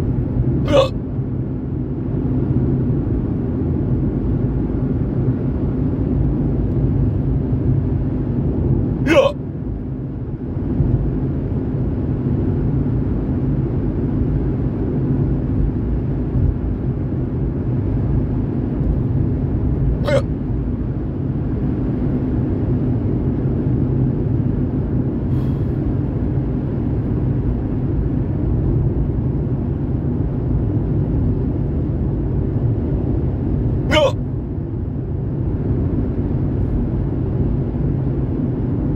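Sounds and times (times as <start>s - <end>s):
car engine and road noise: 0.0s - 38.9s
sharp hiccup: 0.6s - 1.0s, 9.1s - 9.4s, 20.0s - 20.3s, 33.9s - 34.2s.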